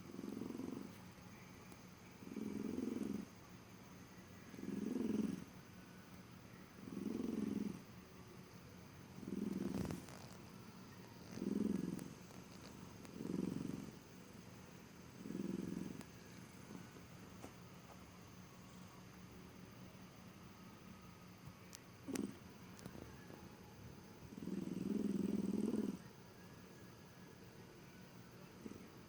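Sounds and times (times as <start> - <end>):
pet snoring: 0.0 - 1.0, 2.2 - 3.4, 4.5 - 5.6, 6.8 - 7.9, 9.1 - 14.4, 15.1 - 16.9, 22.0 - 22.4, 24.3 - 26.1, 28.6 - 29.0.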